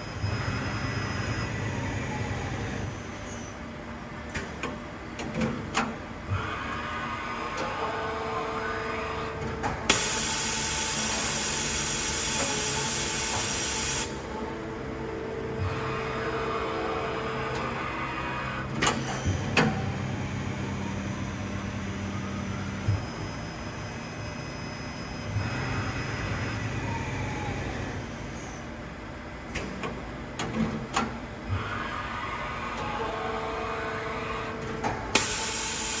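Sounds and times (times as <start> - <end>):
machining center humming: 0.0 - 4.2, 6.2 - 30.4, 31.0 - 36.0
motor whine: 9.9 - 28.6.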